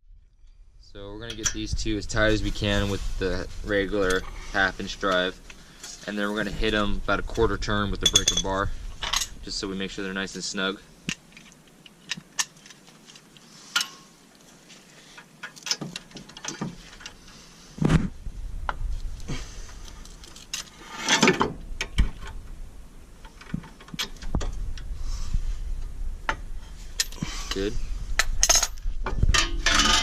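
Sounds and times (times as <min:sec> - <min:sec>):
tools clattering: 0:08.0 - 0:09.4, 0:20.0 - 0:21.6, 0:28.2 - 0:30.0.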